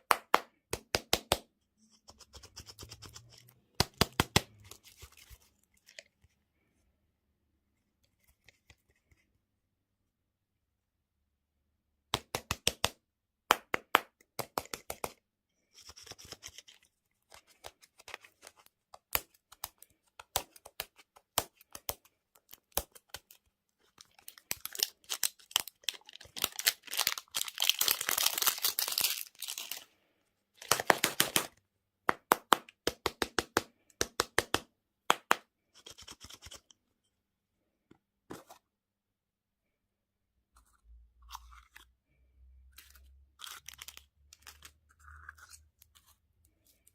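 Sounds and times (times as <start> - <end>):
plastic packaging crinkling: 23.8 - 29.9
plastic packaging tearing: 24.1 - 29.8.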